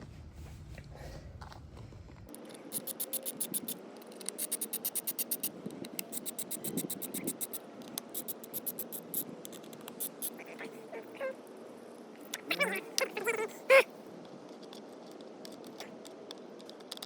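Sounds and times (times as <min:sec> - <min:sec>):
ratchet driver clicking: 0:02.3 - 0:10.4.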